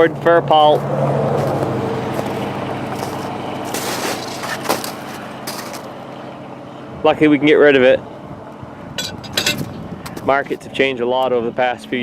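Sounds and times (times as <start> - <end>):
vehicle engine humming: 0.0 - 12.0.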